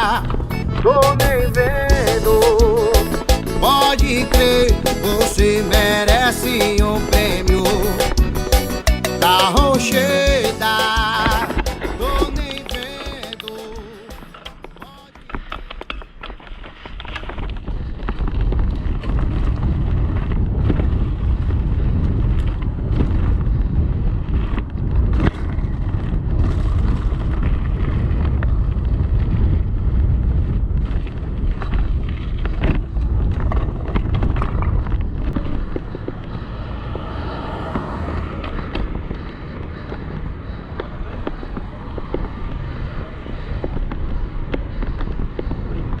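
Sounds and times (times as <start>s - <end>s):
wind buffeting microphone: 0.0s - 6.1s, 16.7s - 46.0s
tyre rumble: 0.0s - 46.0s
bike clicks and rattles: 10.8s - 36.6s, 37.8s - 46.0s.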